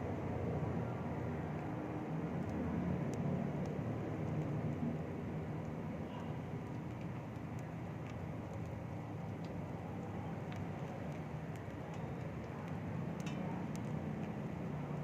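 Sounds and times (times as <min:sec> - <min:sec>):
faint ticks: 0:02.4 - 0:15.0.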